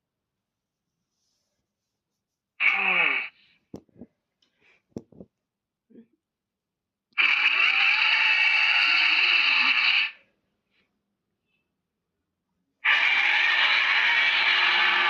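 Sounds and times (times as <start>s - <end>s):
monster hissing roar: 12.8s - 15.0s.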